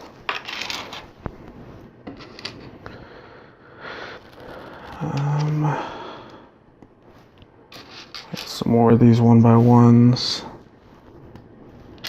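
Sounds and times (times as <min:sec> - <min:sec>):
person humming breath: 0:03.0 - 0:06.5.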